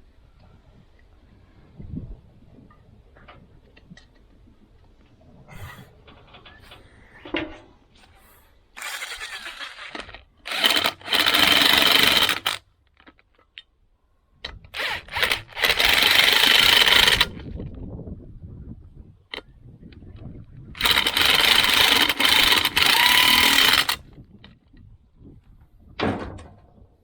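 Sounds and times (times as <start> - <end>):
power tool whining: 8.8 - 12.6, 14.8 - 17.4, 20.8 - 24.0.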